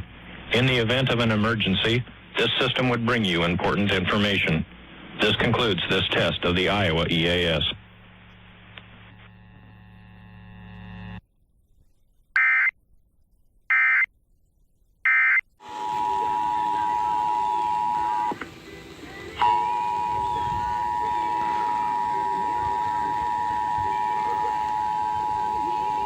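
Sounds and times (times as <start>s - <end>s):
low hum: 0.0s - 12.3s, 14.2s - 26.0s
digital data tone bursts: 19.4s - 26.0s
two-tone alert signal: 19.4s - 26.0s.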